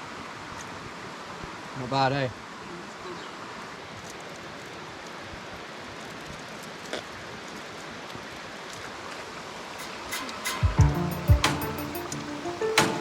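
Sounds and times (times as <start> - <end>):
creek water rushing: 7.1 - 13.0.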